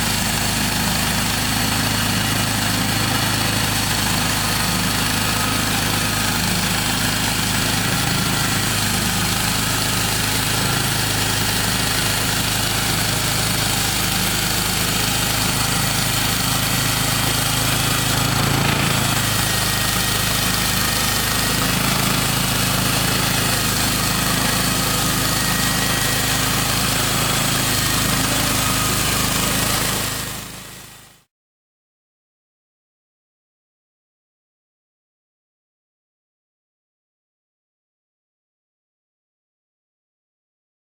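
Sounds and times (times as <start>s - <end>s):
sawmill engine running: 0.0s - 31.2s.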